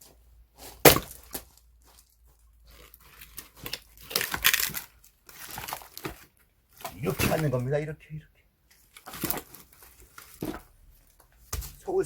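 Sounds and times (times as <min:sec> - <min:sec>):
wood crunching and cracking: 0:00.6 - 0:07.8, 0:08.8 - 0:12.0
axe chopping wood: 0:00.8 - 0:01.5.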